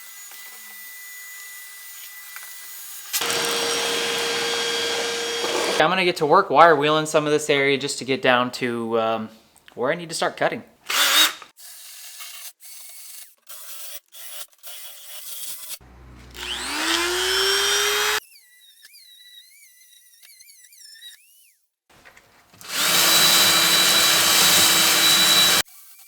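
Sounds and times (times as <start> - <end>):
wire wheel grinder on sheet metal: 3.1 - 5.9, 13.6 - 21.6, 22.6 - 26.0.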